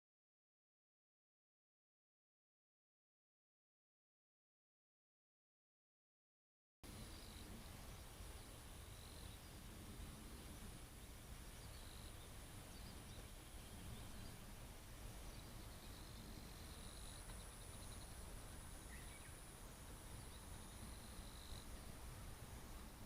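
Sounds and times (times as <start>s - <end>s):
low wind-like rumble: 6.8s - 23.0s
faint bird chirps: 6.9s - 23.0s.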